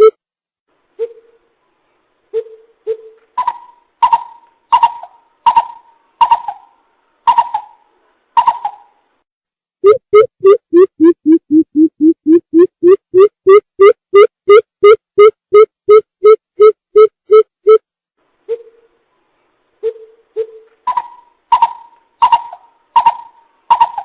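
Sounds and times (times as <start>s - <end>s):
bird hooting: 1.0s - 1.5s, 2.3s - 7.8s, 19.8s - 24.0s.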